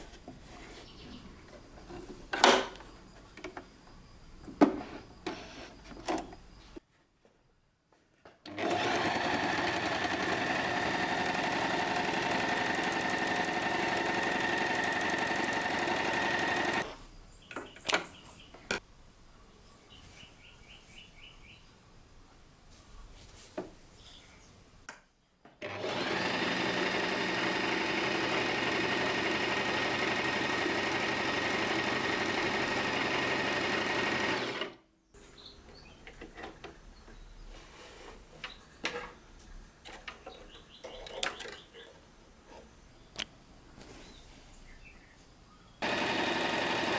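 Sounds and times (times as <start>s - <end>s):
sewing machine stitching: 8.5s - 17.0s, 25.6s - 34.8s, 45.8s - 46.9s.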